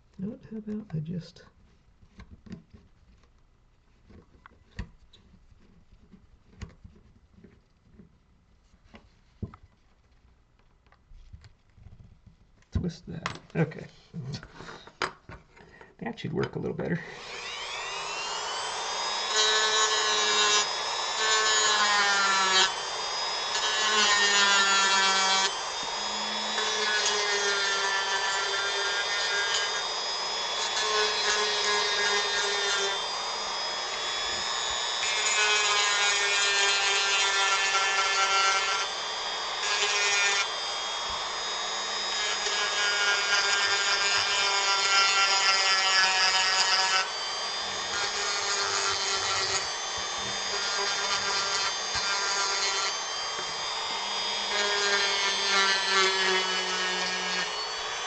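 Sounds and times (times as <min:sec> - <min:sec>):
rotary tool carving wood: 0:00.0 - 0:08.3, 0:16.4 - 0:58.0.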